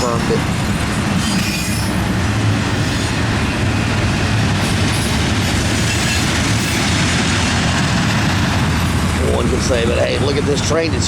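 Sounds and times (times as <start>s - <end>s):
freight train wheels rumbling: 0.0s - 11.0s.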